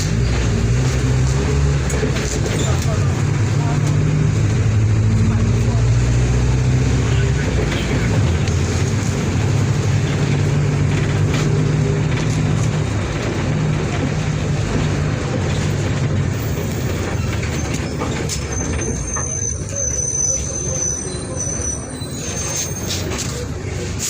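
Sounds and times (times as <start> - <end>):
bus diesel engine droning: 0.0 - 24.0
high-pitched squeal: 16.5 - 23.2.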